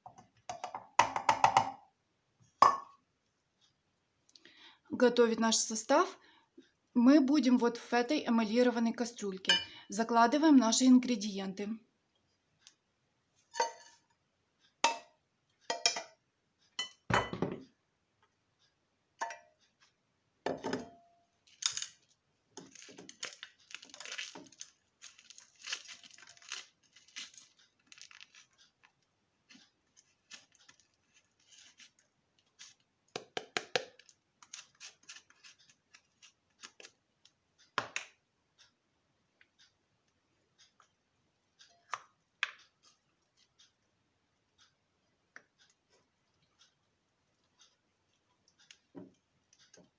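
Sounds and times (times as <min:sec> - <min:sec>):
spoon clinking on saucepan: 0:09.5 - 0:09.8, 0:13.5 - 0:14.0, 0:14.8 - 0:16.2, 0:16.8 - 0:17.5, 0:19.2 - 0:19.6.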